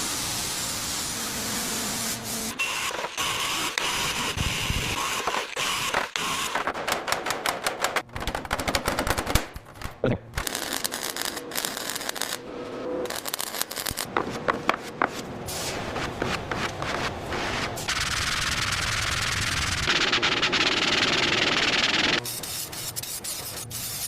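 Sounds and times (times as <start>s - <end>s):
compressed air hissing: 0.0s - 2.6s, 20.8s - 24.0s.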